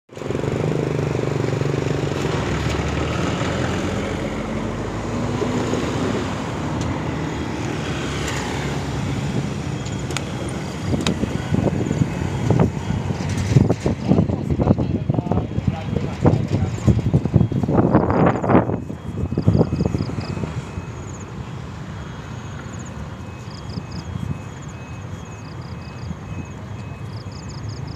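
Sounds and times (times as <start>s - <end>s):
locomotive engine droning: 0.1s - 27.9s
train rumble with knocks: 1.4s - 21.2s.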